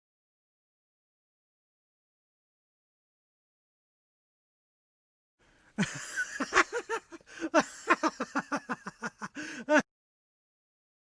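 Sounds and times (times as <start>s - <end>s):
person laughing: 5.8s - 9.8s.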